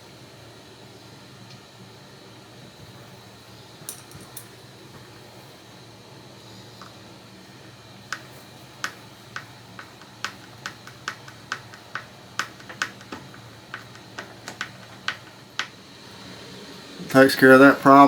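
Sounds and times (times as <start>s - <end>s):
screwdriver clicking: 8.1s - 15.7s.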